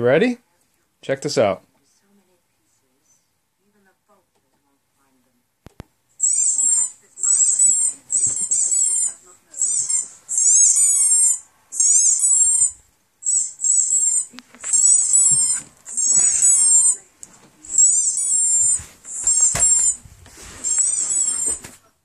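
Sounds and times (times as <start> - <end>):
squeaky dog toy squeaks: 6.2 - 17.0, 17.6 - 21.8
soft scuffling: 14.4 - 21.9.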